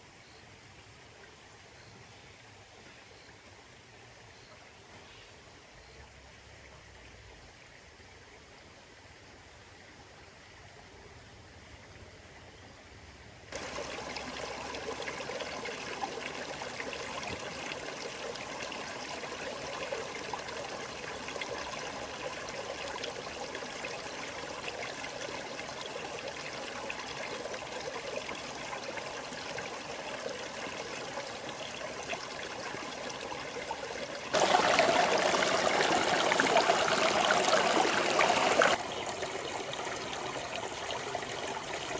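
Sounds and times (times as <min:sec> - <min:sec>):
stream water rushing: 0:13.6 - 0:41.9.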